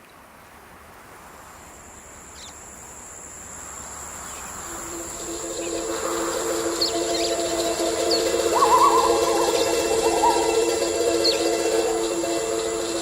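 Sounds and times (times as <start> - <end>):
insect buzz: 1.2 - 13.0
bird chirps: 4.2 - 13.0
sustained music chord: 4.6 - 13.0.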